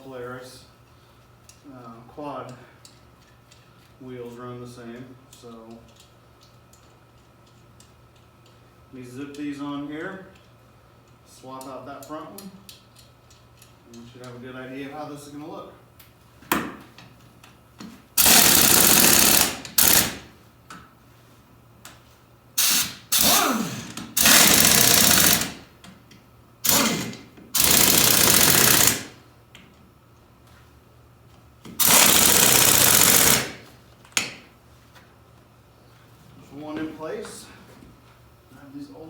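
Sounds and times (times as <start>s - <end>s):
impact wrench hammering: 18.2s - 20.3s, 22.6s - 25.8s, 26.6s - 29.2s, 31.7s - 34.4s.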